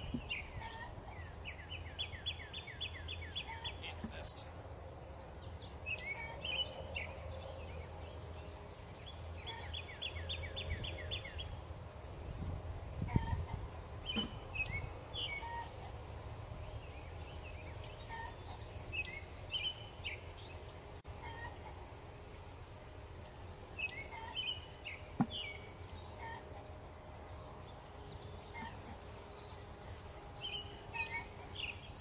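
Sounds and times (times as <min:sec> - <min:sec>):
birds chirping and calling: 0:00.0 - 0:04.4, 0:05.3 - 0:12.4, 0:13.0 - 0:21.5, 0:30.4 - 0:32.0.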